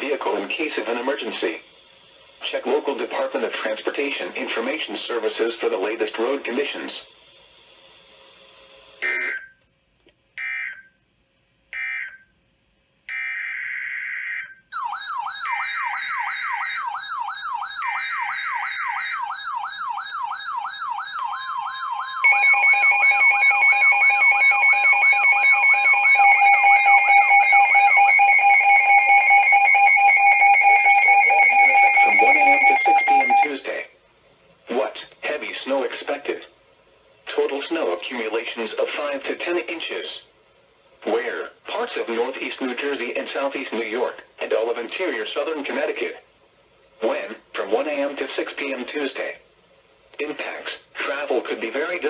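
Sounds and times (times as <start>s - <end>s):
fast-warbling siren alarm: 9.0s - 9.5s, 10.4s - 11.0s, 11.8s - 12.3s, 13.1s - 33.5s
screechy data tone bursts: 22.0s - 33.5s
two-tone attention signal: 22.2s - 33.5s.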